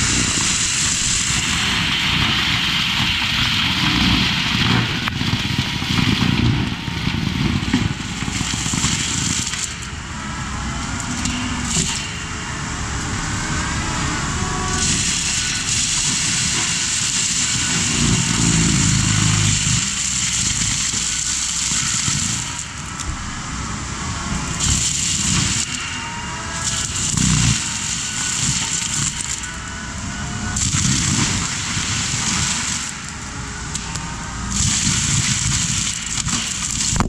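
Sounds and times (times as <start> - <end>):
crackling and crushing of brush: 0.0 - 37.0
skid steer engine running: 0.0 - 37.0
bright hiss: 8.4 - 37.0.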